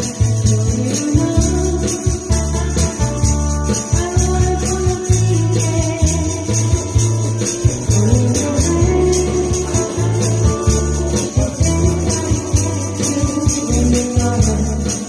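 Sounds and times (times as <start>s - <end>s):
band music: 0.0s - 15.0s
high ticking percussion: 0.0s - 15.0s
prominent bass line: 0.0s - 15.0s.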